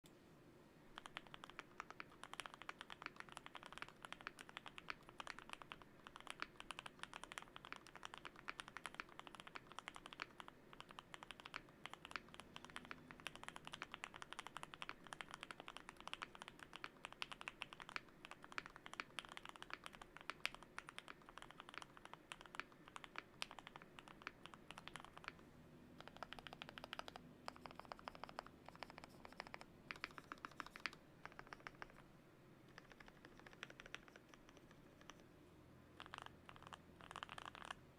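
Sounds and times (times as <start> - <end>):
fast typing on mechanical keyboard: 1.0 - 25.4, 26.0 - 32.0, 32.7 - 35.2, 36.0 - 37.8.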